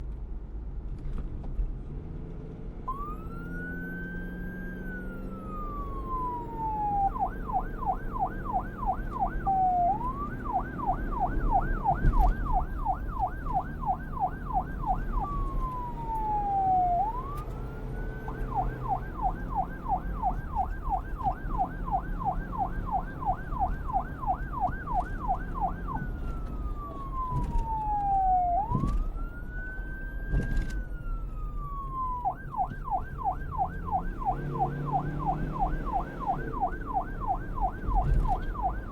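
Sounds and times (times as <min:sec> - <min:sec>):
police siren wailing and yelping: 0:02.9 - 0:38.9.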